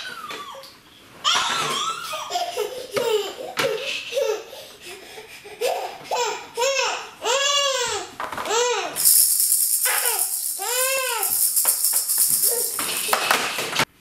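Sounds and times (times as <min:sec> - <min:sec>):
hissing rattle: 0:09.0 - 0:13.4.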